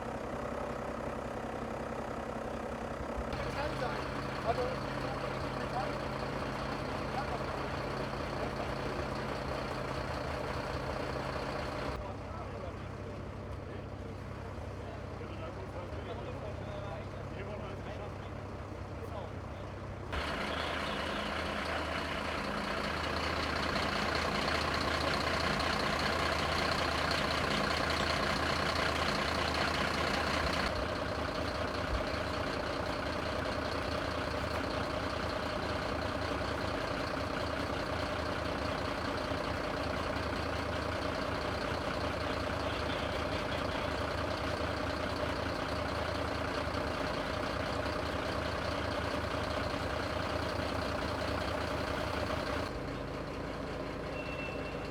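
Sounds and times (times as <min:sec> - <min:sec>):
diesel truck engine running: 0:00.0 - 0:54.9.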